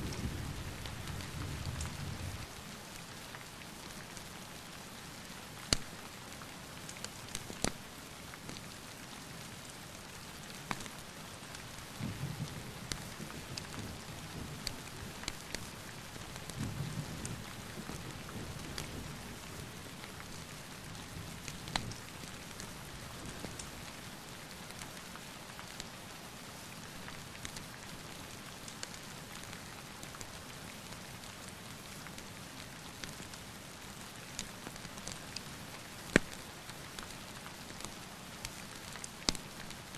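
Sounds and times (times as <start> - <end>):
steady rain: 0.0 - 39.9.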